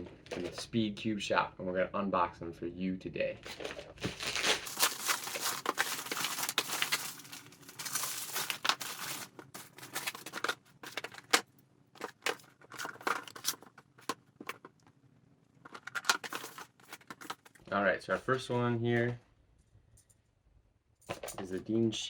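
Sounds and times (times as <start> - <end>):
plastic packaging crinkling and tearing: 3.5 - 11.4, 12.0 - 14.7, 15.7 - 17.6.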